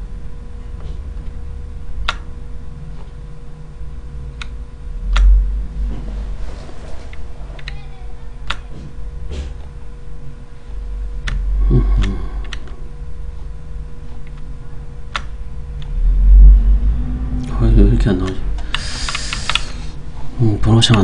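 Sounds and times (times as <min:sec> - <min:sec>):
steady low hum: 0:00.0 - 0:21.0
computer mouse clicks: 0:18.3 - 0:19.7.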